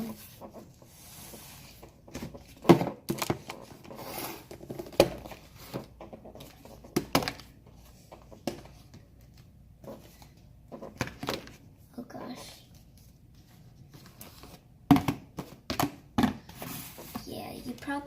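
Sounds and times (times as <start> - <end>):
plastic tubs clicking and knocking: 2.1 - 3.8, 4.5 - 11.6, 14.8 - 17.2.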